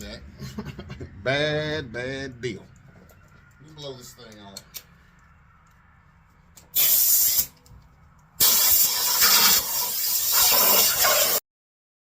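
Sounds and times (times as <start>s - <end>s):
compressed air hissing blast: 6.7s - 7.5s, 8.4s - 11.4s.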